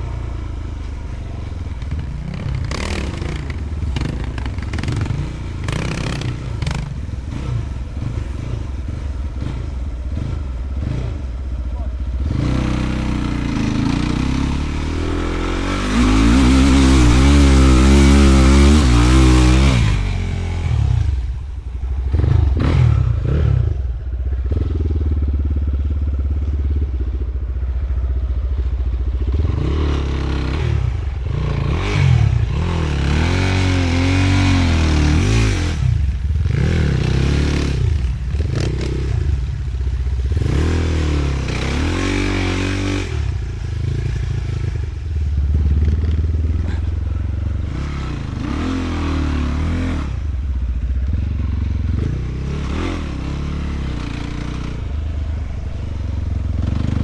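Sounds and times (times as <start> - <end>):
motorcycle engine revving: 0.0 - 57.0.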